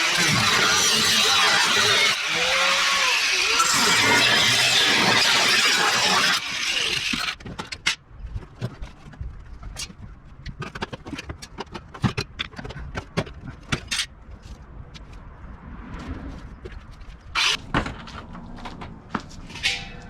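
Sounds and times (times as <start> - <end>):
power tool running: 0.0 - 7.4.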